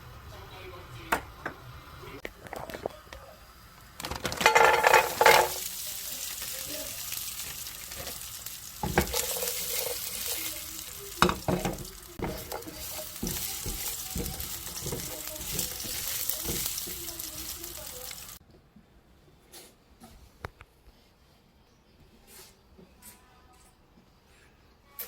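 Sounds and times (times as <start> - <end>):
food sizzling in a frying pan: 0.0 - 18.4
utensil scraping a pan: 4.4 - 18.4.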